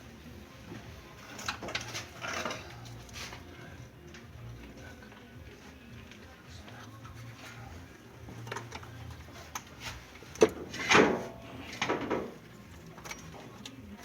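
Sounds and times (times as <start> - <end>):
knocks and clicks of hard parts: 10.3 - 12.4.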